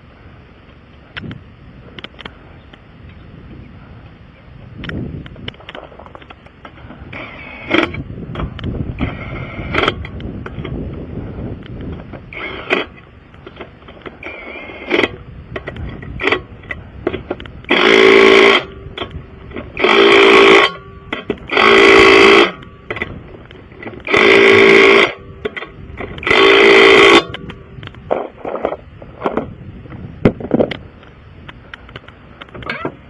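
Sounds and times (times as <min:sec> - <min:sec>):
small clicks and knocks: 0:02.0 - 0:02.8, 0:30.5 - 0:33.0
impact wrench whirring: 0:06.8 - 0:10.8, 0:12.2 - 0:13.0, 0:13.6 - 0:28.4.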